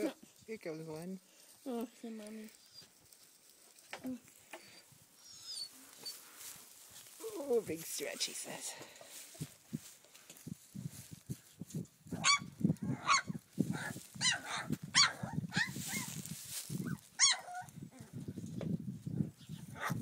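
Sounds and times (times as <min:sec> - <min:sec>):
puppies yelping: 0:04.7 - 0:06.2, 0:12.2 - 0:16.2, 0:16.8 - 0:17.7.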